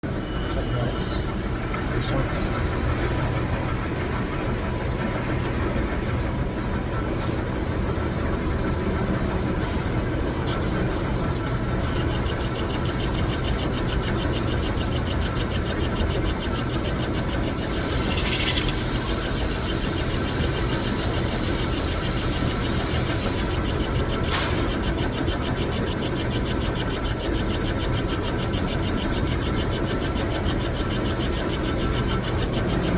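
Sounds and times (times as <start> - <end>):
fast even ticking: 11.6 - 32.9.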